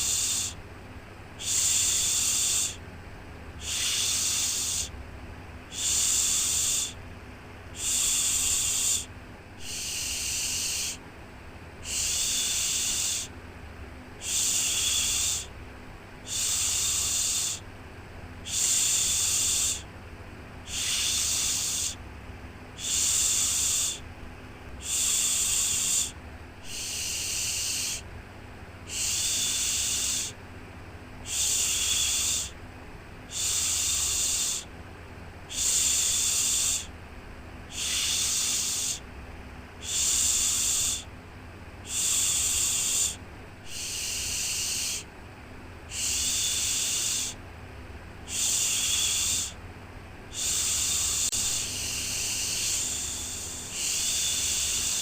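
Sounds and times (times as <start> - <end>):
faint low hum: 0.0 - 55.0
person shushing: 3.6 - 4.9, 7.8 - 11.0, 20.7 - 22.0, 31.2 - 32.6, 33.3 - 34.7, 35.5 - 36.9, 37.7 - 39.0, 48.3 - 49.6, 50.3 - 55.0.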